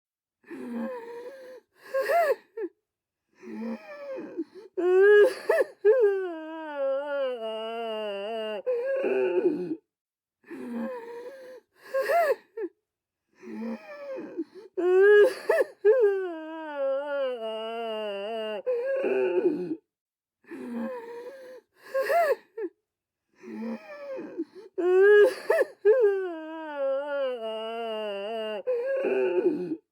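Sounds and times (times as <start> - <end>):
person sobbing: 4.8 - 9.8, 14.8 - 19.8, 24.2 - 29.8.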